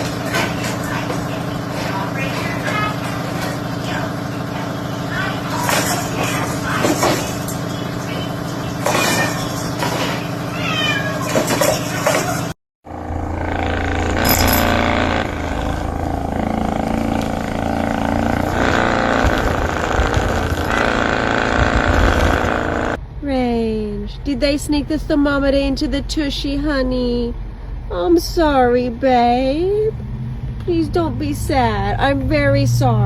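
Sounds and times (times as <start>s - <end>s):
cat meowing: 10.5s - 12.2s
low hum: 12.9s - 33.0s
steady noise: 12.9s - 33.0s.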